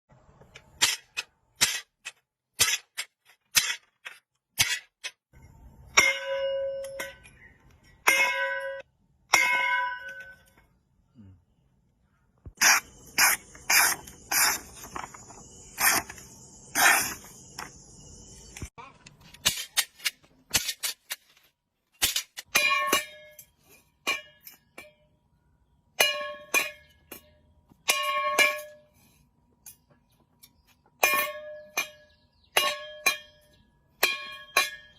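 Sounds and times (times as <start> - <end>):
knife scraping metal: 12.6 - 17.7.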